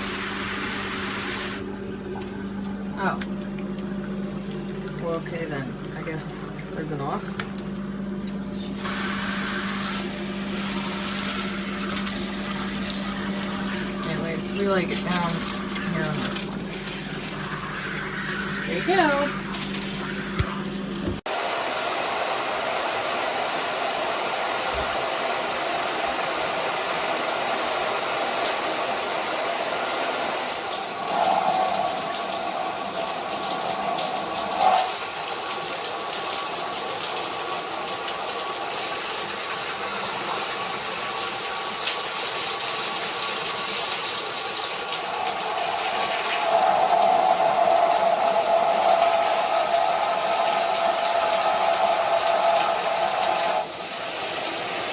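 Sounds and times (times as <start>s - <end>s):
water spraying from shower head: 8.8s - 21.1s, 30.7s - 54.9s.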